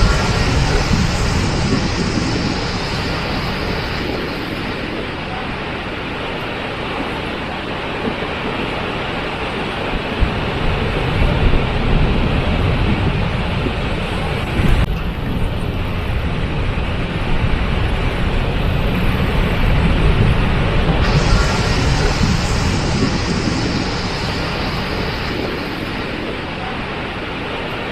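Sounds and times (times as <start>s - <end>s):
waterfall rushing: 0.0s - 6.8s, 21.0s - 27.9s.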